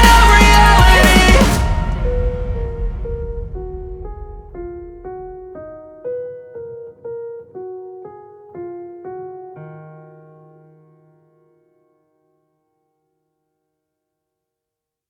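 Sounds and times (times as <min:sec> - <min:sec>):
keyboard melody: 0:00.0 - 0:03.8
drums: 0:00.0 - 0:05.8.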